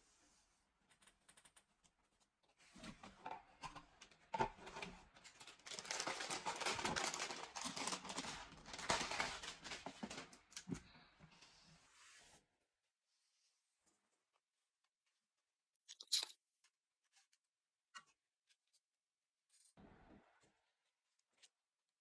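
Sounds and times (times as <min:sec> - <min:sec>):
packaging crinkling and tearing: 0:05.4 - 0:10.4.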